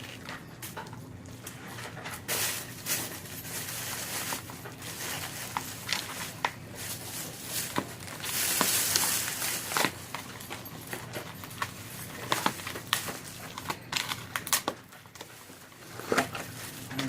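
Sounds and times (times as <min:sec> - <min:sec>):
slime rustle: 0:01.5 - 0:10.4.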